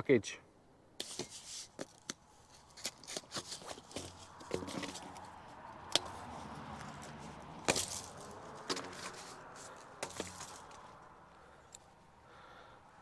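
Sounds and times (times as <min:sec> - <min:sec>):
scraping and rustling: 0:01.0 - 0:11.1.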